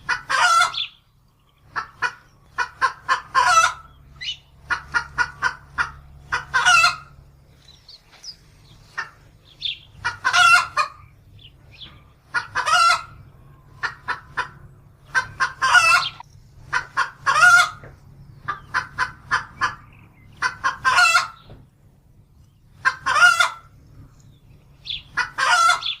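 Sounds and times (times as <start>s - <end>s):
chickens clucking: 0.0s - 26.0s.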